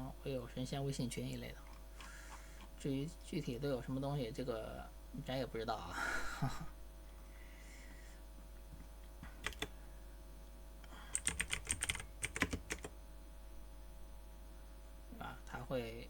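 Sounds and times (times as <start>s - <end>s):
computer keyboard typing: 9.4s - 9.7s, 11.1s - 12.9s.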